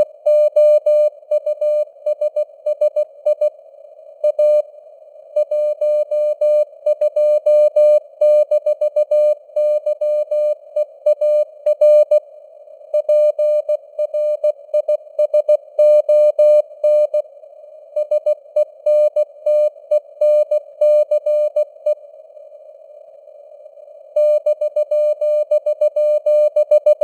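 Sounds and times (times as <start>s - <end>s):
morse code beeps: 0.3s - 3.5s.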